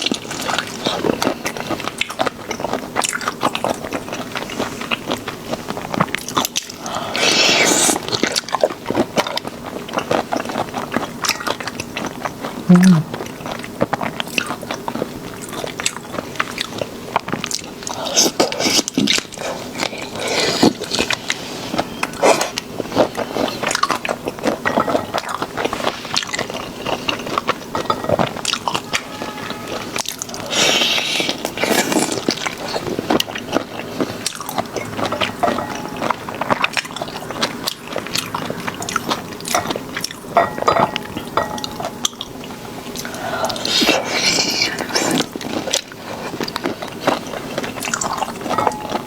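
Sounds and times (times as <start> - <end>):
person chewing and crunching: 0.0 - 49.0
wet mouth clicks: 12.7 - 13.2.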